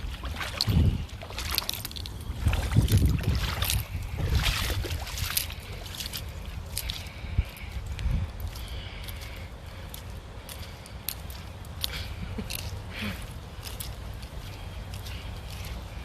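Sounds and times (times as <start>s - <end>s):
wind buffeting microphone: 0.0s - 11.9s.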